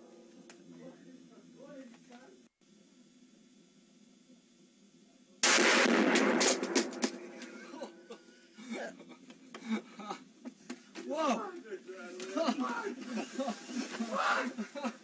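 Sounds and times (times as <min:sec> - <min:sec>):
loud distorted gunshot: 0:05.4 - 0:07.8
men's voices: 0:08.6 - 0:15.0.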